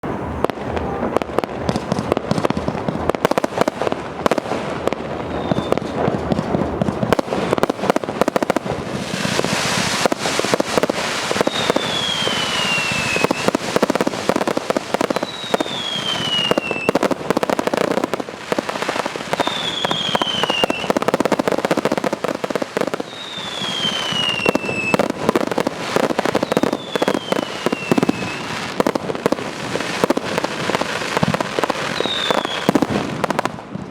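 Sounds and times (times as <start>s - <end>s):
fireworks launching and bursting: 0.0s - 33.9s
falling firework whistle: 5.2s - 6.2s, 9.0s - 17.2s, 19.2s - 28.9s, 30.0s - 33.9s.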